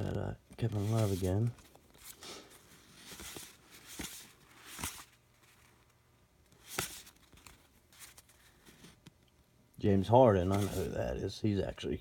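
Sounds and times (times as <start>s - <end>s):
trading cards flicking and sliding: 0.6s - 5.2s, 6.5s - 9.1s.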